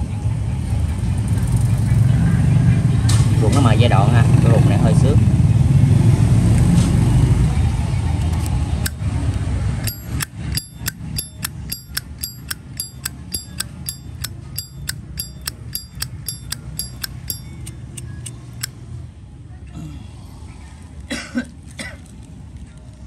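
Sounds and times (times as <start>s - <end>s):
lighter lid clinking open and shut: 9.8s - 18.7s.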